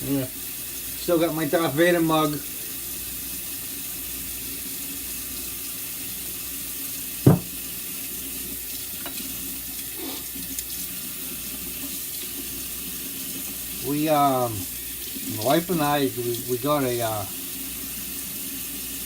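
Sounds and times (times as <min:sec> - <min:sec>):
faucet running into sink: 0:00.0 - 0:19.0
light knocks: 0:07.3 - 0:07.5.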